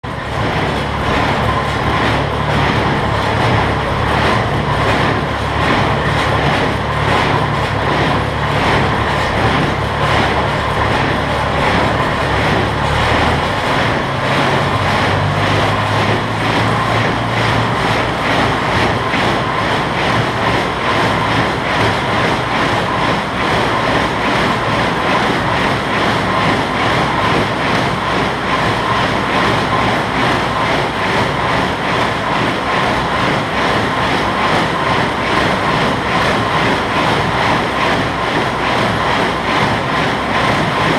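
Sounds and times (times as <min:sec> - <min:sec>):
tractor engine humming: 0:00.0 - 0:25.0
baler mechanism cycling rhythmically: 0:00.0 - 0:40.9.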